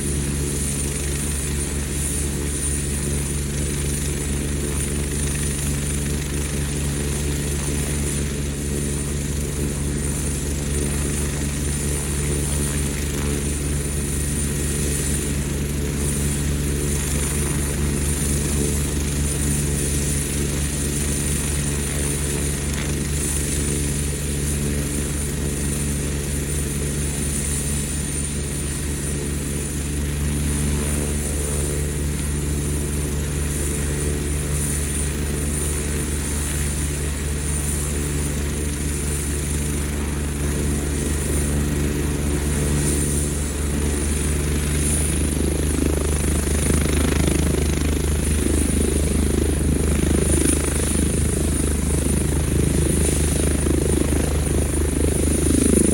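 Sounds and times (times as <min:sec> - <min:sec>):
helicopter rotors beating: 0:00.0 - 0:55.9
high turbine whine: 0:29.0 - 0:55.9.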